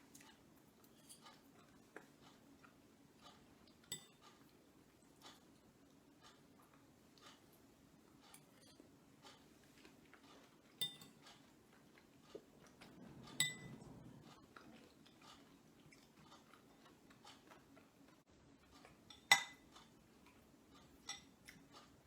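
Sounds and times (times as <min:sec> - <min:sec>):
faint clicks of utensils: 0:00.1 - 0:02.4, 0:03.2 - 0:04.6, 0:06.2 - 0:22.0
metal spoon clinking against bowl: 0:03.8 - 0:04.2, 0:10.8 - 0:11.2, 0:13.3 - 0:14.1, 0:19.1 - 0:19.7, 0:21.0 - 0:21.7.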